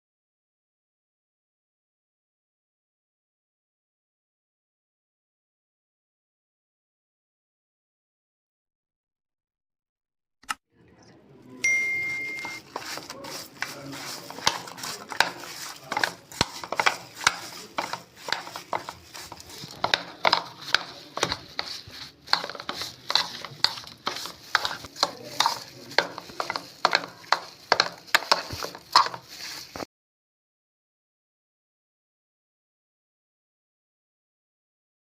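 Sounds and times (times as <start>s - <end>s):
kitchen utensil clinking and knocking: 11.7s - 29.8s.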